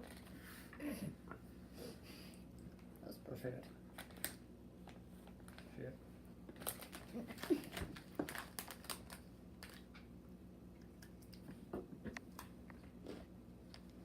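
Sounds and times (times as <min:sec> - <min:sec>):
plastic packaging crinkling: 0:03.9 - 0:04.4, 0:06.5 - 0:10.0.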